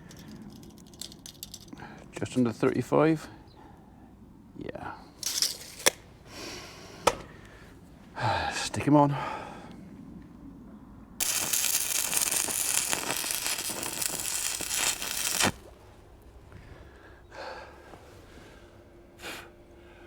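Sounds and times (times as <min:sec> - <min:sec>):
arc welder crackling: 0:05.2 - 0:06.0, 0:11.2 - 0:15.7.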